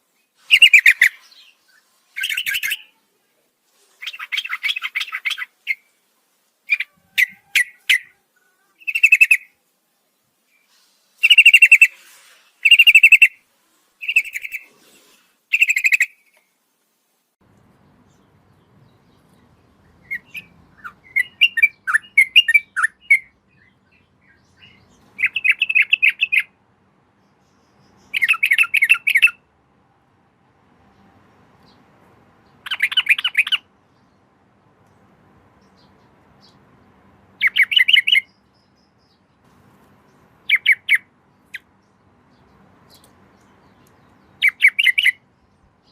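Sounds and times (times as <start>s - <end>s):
faint low hum: 16.6s - 28.2s.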